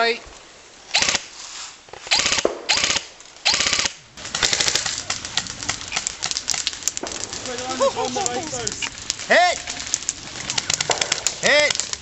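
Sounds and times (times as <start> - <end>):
airsoft guns firing rapidly: 2.1 - 4.8.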